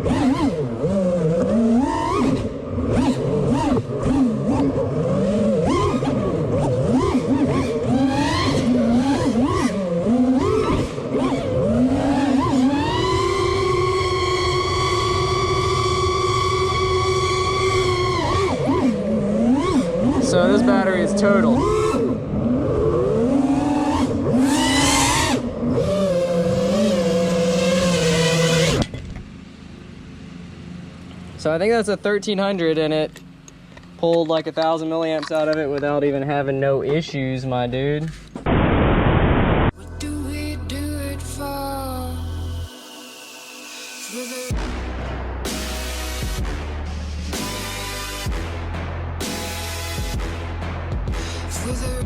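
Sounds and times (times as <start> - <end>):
quadcopter motors whining: 0.0 - 29.2
low hum: 0.6 - 32.1, 38.3 - 52.0.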